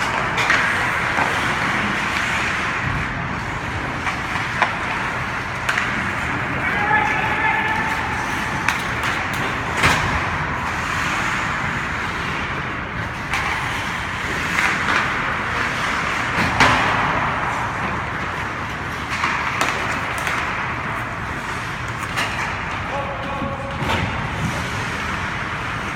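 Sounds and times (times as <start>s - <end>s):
skates scraping on ice: 0.0s - 25.9s
sticks and puck knocking: 3.8s - 7.0s, 7.9s - 11.4s, 12.4s - 20.8s.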